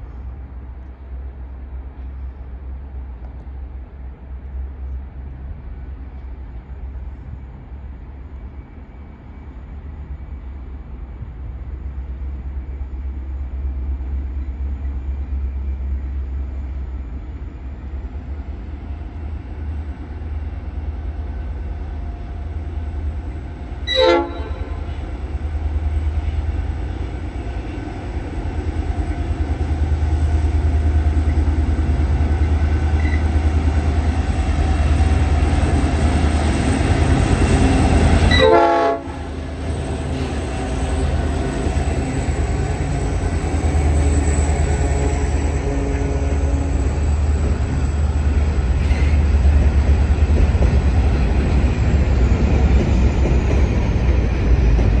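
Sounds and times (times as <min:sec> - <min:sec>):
diesel locomotive engine rumble: 0:00.0 - 0:55.0
sharp horn toot: 0:23.9 - 0:25.0.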